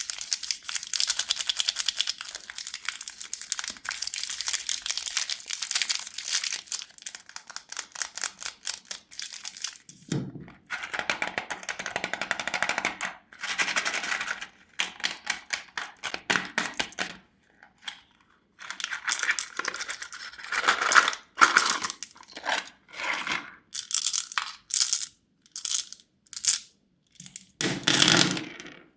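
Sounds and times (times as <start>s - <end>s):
plastic candy wrappers crinkling: 0.0s - 9.9s, 18.6s - 27.4s.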